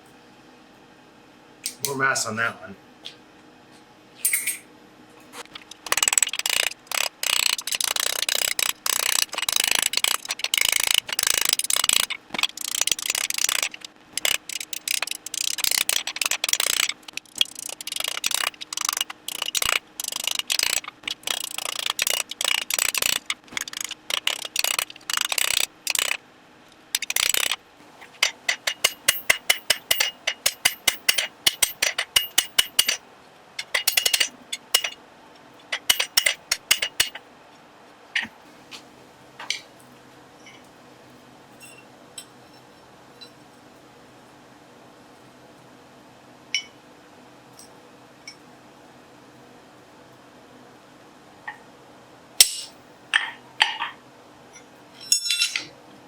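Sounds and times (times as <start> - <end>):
hammer striking hot iron on anvil: 52.4 - 52.8.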